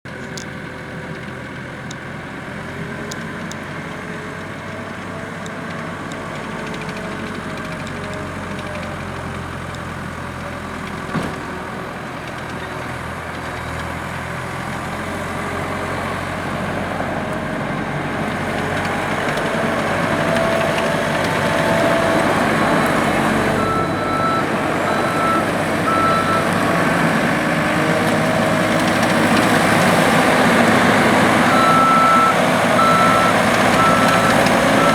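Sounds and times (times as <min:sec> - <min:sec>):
diesel engine running: 0:00.1 - 0:34.9
backup alarm beeping: 0:21.5 - 0:26.8, 0:31.4 - 0:34.9.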